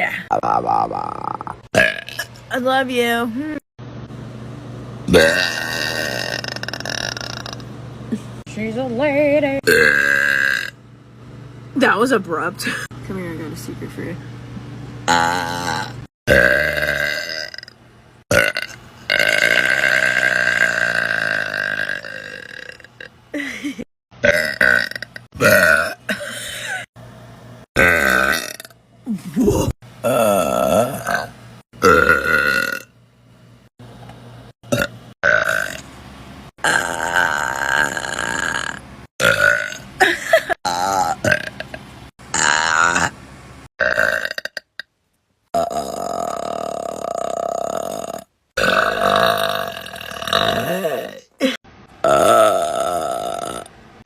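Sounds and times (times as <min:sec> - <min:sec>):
person burping: 0:00.0 - 0:02.4, 0:05.1 - 0:07.7, 0:09.6 - 0:10.8, 0:15.1 - 0:23.5, 0:24.2 - 0:26.9, 0:27.8 - 0:28.7, 0:29.3 - 0:32.9, 0:34.7 - 0:35.8, 0:36.6 - 0:43.1, 0:43.8 - 0:44.9, 0:45.6 - 0:53.7.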